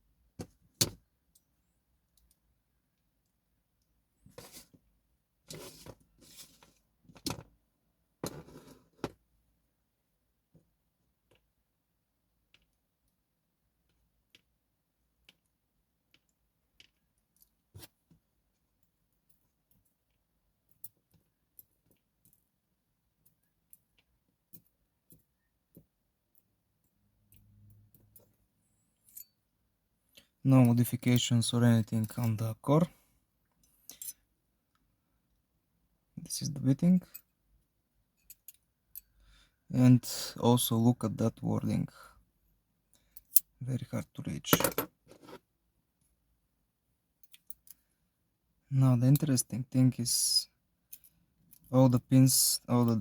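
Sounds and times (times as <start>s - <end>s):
metal lock parts clicking and scraping: 44.4s - 45.4s.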